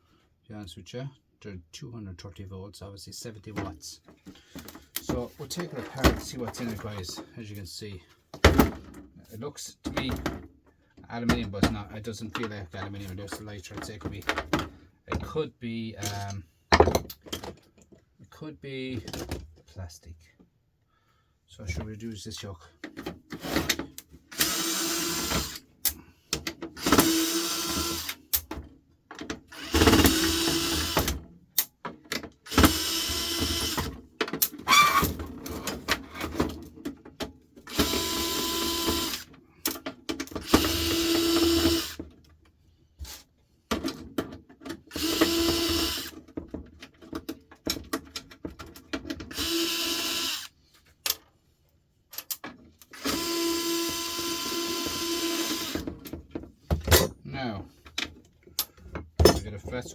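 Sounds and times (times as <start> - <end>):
cordless drill running: 24.3 - 25.6, 26.8 - 28.2, 29.5 - 31.1, 32.5 - 33.9, 37.7 - 39.3, 40.4 - 42.0, 44.9 - 46.1, 49.3 - 50.5, 53.0 - 55.8.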